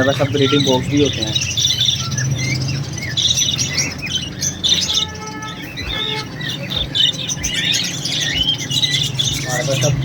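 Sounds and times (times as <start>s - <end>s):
small parrots chirping and chattering: 0.0s - 10.0s.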